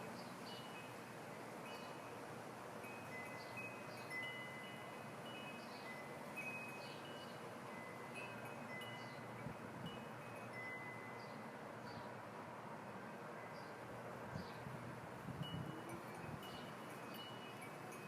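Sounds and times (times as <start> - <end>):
steady background hiss: 0.0 - 18.0
faint chimes ringing: 2.9 - 11.5, 15.4 - 18.0.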